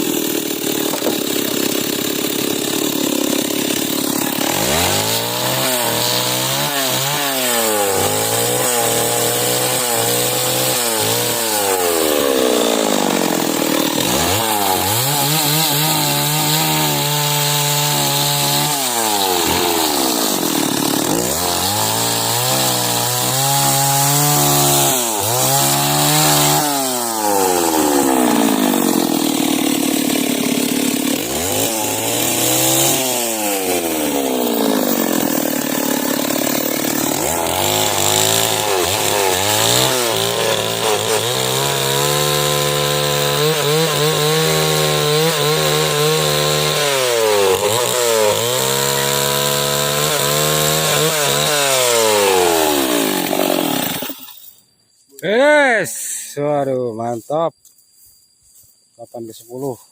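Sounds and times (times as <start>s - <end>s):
chainsaw cutting log: 0.0s - 54.6s.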